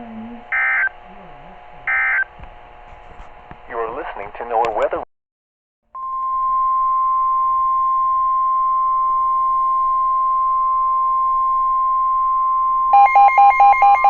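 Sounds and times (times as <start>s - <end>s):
steady alarm tone: 0.5s - 1.0s, 1.8s - 2.4s, 6.0s - 14.0s.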